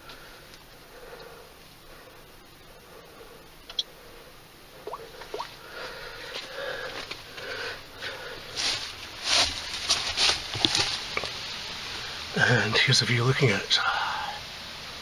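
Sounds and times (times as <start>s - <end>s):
rustling and scuffing: 5.5s - 11.5s
sniffing breaths: 5.6s - 8.9s.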